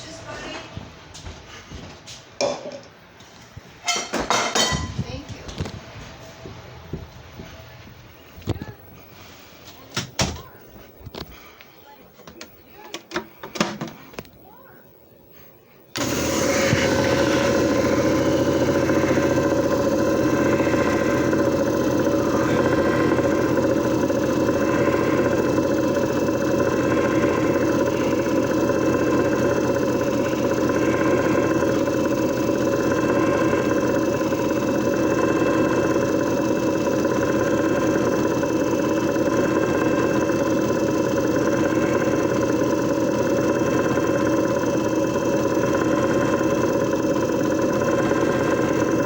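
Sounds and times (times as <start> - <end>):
machine motor droning: 15.9 - 49.0.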